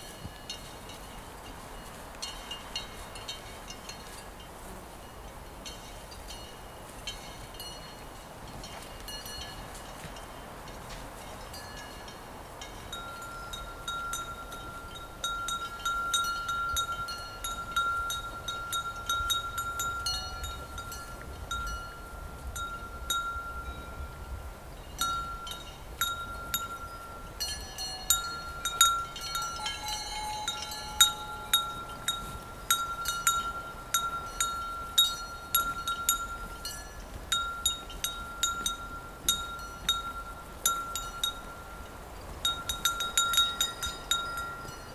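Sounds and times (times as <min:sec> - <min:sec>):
cow bells clanking: 0:00.0 - 0:44.9
ringing bell tone: 0:25.0 - 0:41.9.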